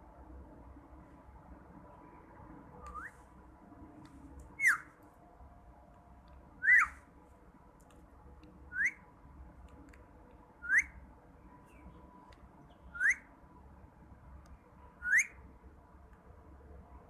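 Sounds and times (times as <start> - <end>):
parrot beep-like whistles: 2.8 - 3.2, 4.6 - 4.9, 6.6 - 7.0, 8.7 - 9.0, 10.6 - 11.0, 12.9 - 13.3, 15.0 - 15.4.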